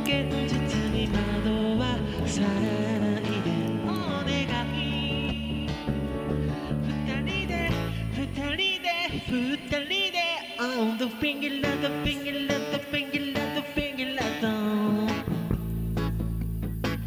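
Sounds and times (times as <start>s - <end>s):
song with sung vocal melody: 0.0s - 16.4s.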